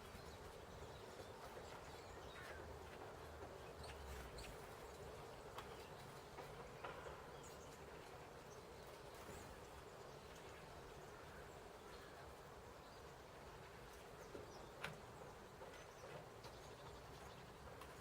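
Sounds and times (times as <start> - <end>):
small birds chirping softly: 0.0 - 18.0.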